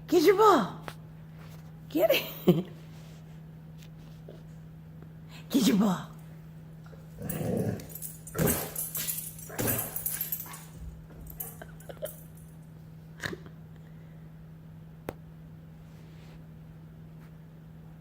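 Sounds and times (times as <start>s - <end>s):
dog grumbling and whining: 6.9s - 12.3s.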